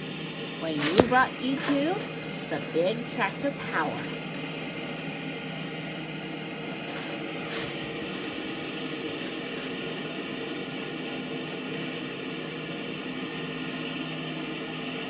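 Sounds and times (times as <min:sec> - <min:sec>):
constant hiss: 0:00.0 - 0:11.2
harvest machinery engine hum: 0:00.0 - 0:12.3.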